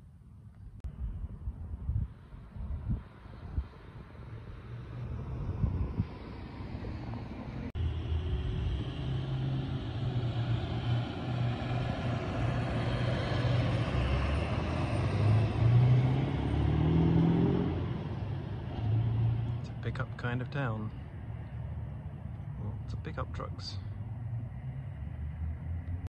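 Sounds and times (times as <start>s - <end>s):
pickup truck engine driving by: 3.7s - 20.3s.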